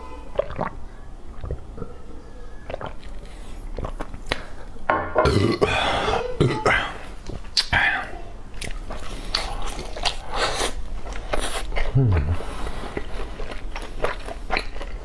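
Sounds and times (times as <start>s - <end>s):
wet chewing and smacking: 0.3s - 1.9s, 2.6s - 4.6s, 8.5s - 15.0s.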